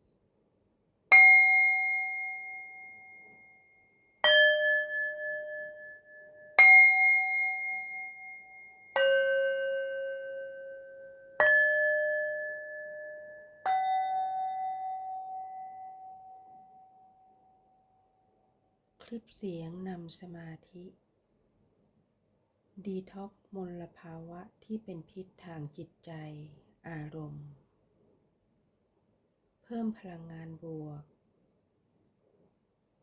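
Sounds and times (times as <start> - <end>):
meditation bells ringing: 1.1 - 17.4.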